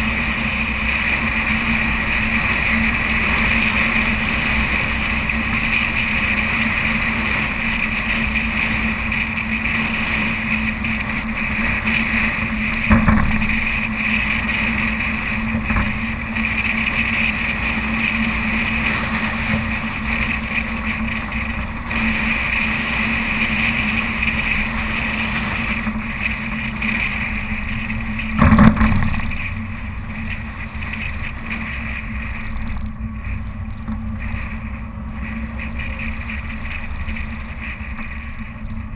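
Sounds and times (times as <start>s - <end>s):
car engine running: 0.0s - 38.9s
low hum: 0.0s - 38.9s.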